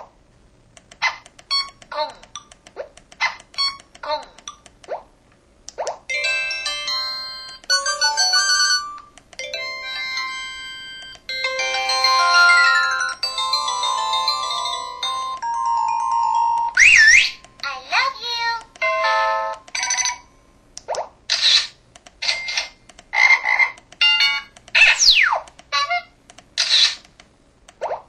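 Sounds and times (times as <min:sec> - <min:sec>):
electronic ringtone melodies: 0:01.5 - 0:01.8, 0:03.6 - 0:03.8, 0:06.1 - 0:17.4.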